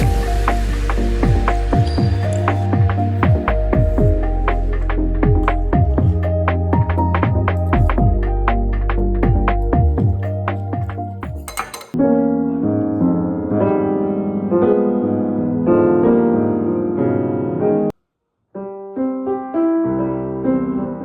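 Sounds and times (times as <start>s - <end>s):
electronic beat: 0.0s - 11.5s
piano playing chords: 0.0s - 17.9s.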